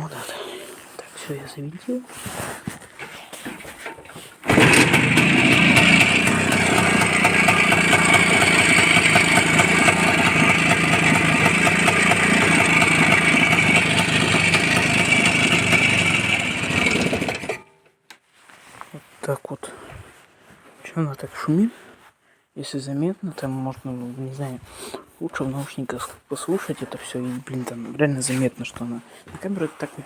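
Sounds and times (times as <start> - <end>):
engine chain clatter: 4.4 - 17.6
small motorcycle engine running: 4.4 - 17.7.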